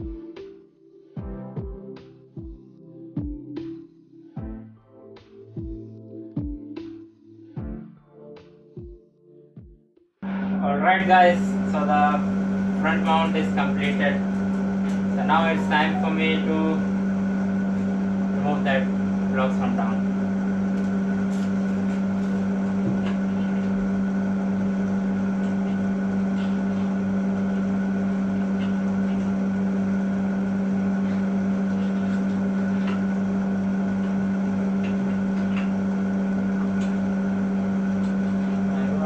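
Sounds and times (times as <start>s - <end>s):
low machine hum: 10.2s - 39.0s.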